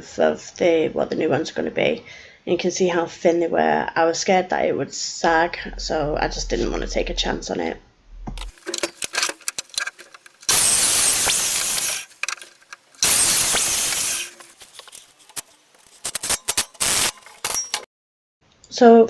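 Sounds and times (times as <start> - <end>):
power saw cutting wood: 8.4 - 17.8.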